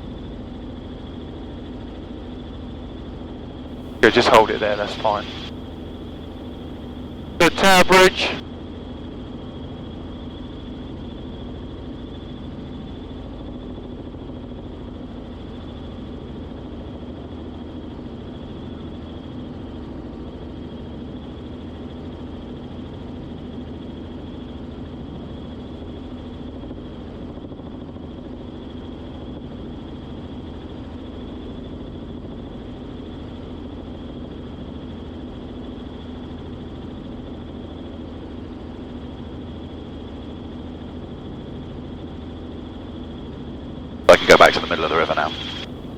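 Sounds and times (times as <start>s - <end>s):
helicopter engine and rotor drone: 0.0s - 5.5s, 7.4s - 45.9s
thin high whine: 4.0s - 5.5s, 44.1s - 45.7s.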